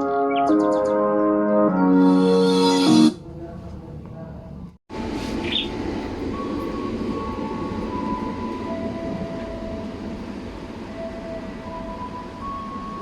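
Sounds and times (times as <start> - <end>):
long held tones: 5.7 - 13.0.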